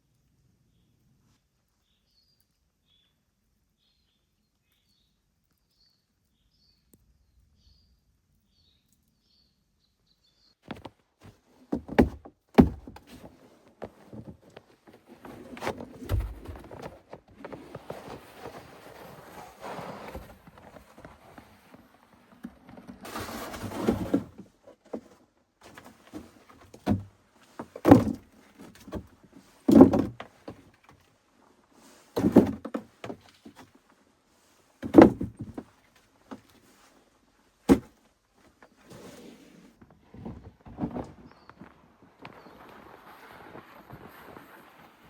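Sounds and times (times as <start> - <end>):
rustling and shuffling: 10.6 - 45.0
dull heavy thuds: 10.7 - 14.6.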